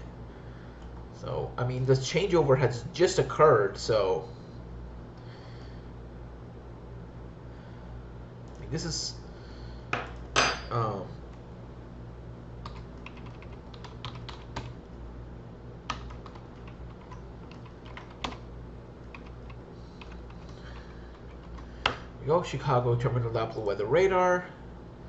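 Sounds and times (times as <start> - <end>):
steady low hum: 0.0 - 25.0
keyboard typing: 12.6 - 14.8, 15.9 - 18.4, 19.1 - 21.7.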